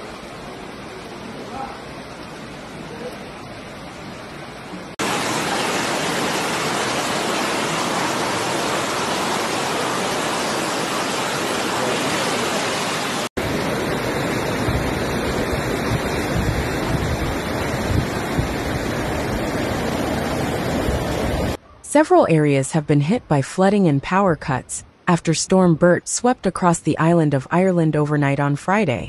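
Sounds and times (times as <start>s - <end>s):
rushing floodwater: 0.0s - 21.6s
wind buffeting microphone: 13.4s - 21.6s.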